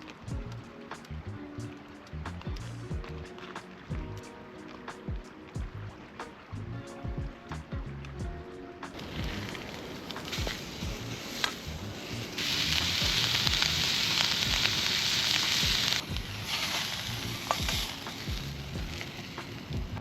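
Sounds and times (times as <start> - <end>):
campfire crackles: 0.0 - 20.0
food sizzling in a pan: 9.0 - 20.0.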